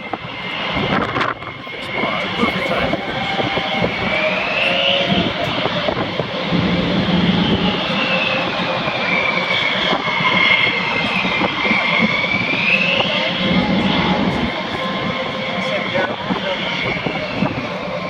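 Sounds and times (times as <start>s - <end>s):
jet engine running with whine: 0.0s - 18.0s.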